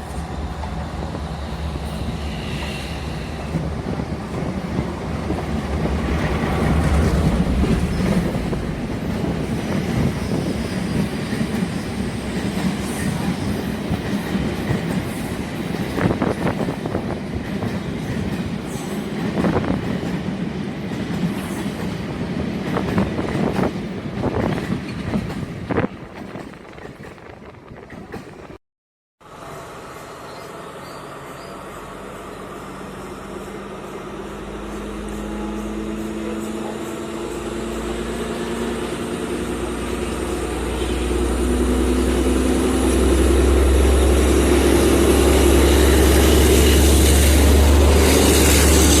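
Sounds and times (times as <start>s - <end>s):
diesel train engine drone: 0.0s - 20.2s, 29.2s - 49.0s
train wheels clattering on rails: 0.0s - 28.6s.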